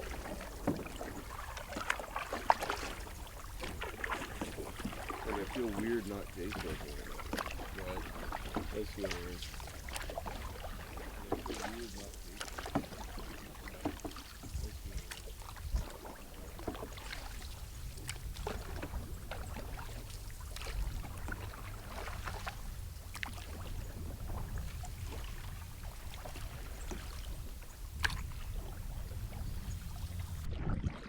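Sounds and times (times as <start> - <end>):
paddle splashing water: 0.0 - 31.0.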